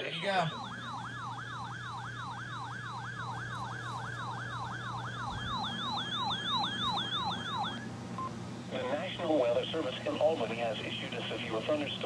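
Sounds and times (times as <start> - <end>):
electronic yelp siren: 0.0 - 7.9
steady low hum: 0.0 - 12.0.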